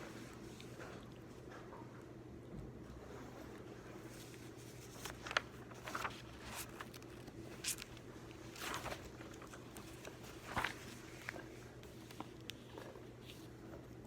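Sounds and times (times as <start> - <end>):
paper rustling: 3.5 - 14.0.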